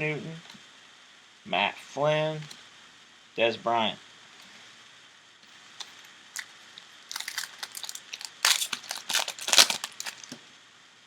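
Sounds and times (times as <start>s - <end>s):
foil wrapper tearing and crinkling: 7.1s - 10.4s.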